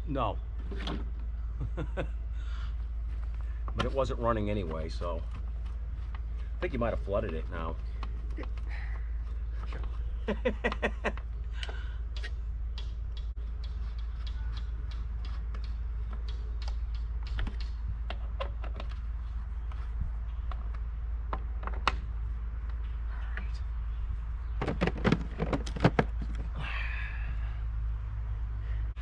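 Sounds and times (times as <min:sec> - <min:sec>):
steady low hum: 0:00.0 - 0:29.0
hands clicking and tapping: 0:10.6 - 0:18.9.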